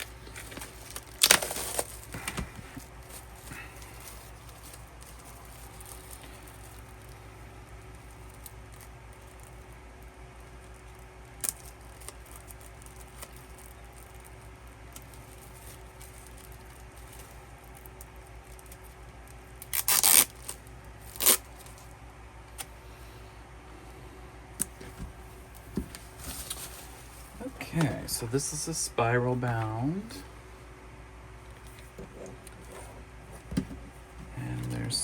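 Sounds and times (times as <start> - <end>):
packaging tearing or crinkling: 0.0 - 9.8, 10.4 - 21.9
packaging rustling: 0.0 - 21.9, 24.6 - 28.1.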